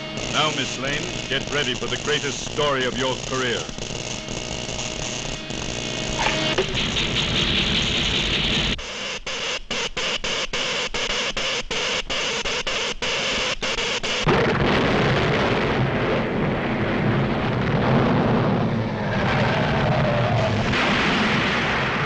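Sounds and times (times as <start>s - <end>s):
stuttering hiss: 0.0s - 14.3s
heavy earthquake rumble: 14.3s - 22.0s.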